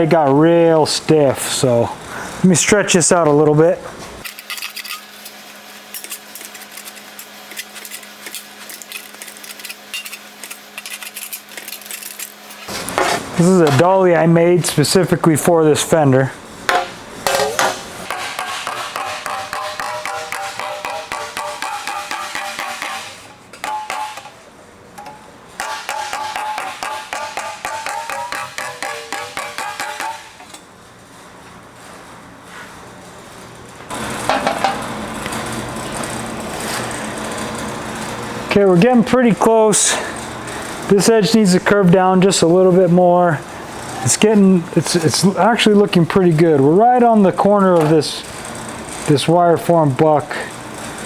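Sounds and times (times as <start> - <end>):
steady low hum: 0.0 - 51.0
hammer striking sheet metal: 16.7 - 24.4, 25.0 - 30.5.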